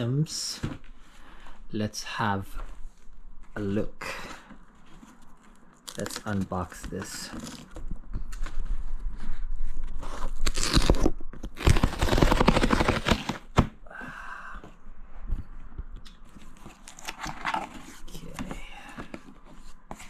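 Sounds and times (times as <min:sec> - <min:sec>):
packaging rustling: 0:04.7 - 0:08.7, 0:10.1 - 0:13.6, 0:16.1 - 0:20.0
packaging crackling and tearing: 0:05.8 - 0:08.6, 0:10.2 - 0:13.6, 0:16.5 - 0:18.5.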